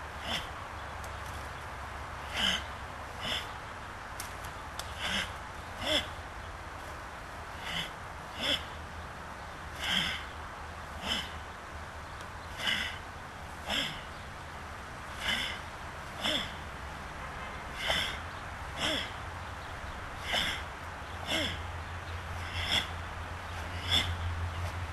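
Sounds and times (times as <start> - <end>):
sharp exhaled breaths with grunts: 0.1 - 0.7, 2.2 - 3.6, 4.8 - 6.3, 7.4 - 8.8, 9.6 - 11.6, 12.4 - 14.4, 15.0 - 16.8, 17.6 - 19.3, 20.1 - 24.9.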